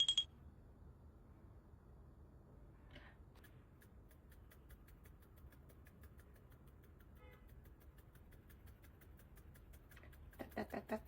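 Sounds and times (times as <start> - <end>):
faint rapid ticking: 3.4 - 11.0.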